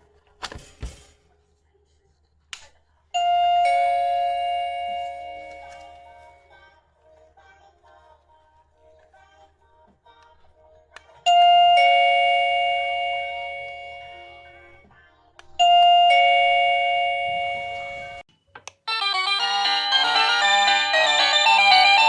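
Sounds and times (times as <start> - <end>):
doorbell ding-dong chime: 3.2 - 6.4, 11.3 - 14.6, 15.6 - 18.2.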